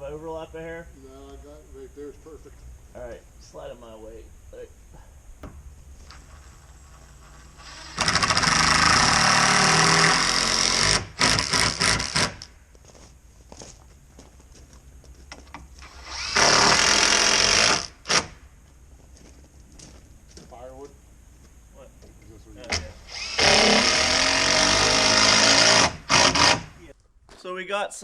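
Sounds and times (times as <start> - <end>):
power drill driving screws: 6.4 - 12.5, 15.8 - 18.4, 22.7 - 26.8.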